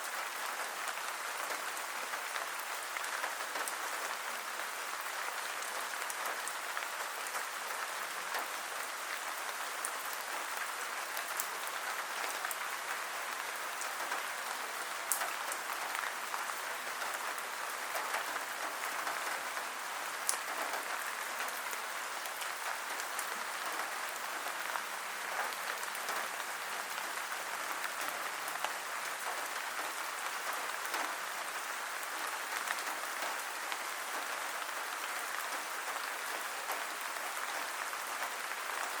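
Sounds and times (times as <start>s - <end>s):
steady rain falling: 0.0s - 39.0s.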